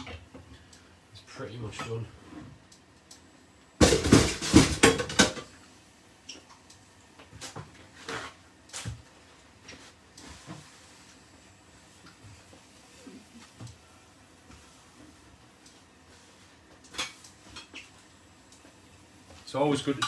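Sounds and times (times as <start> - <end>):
pan and utensils clattering: 3.8 - 5.5, 16.9 - 17.9.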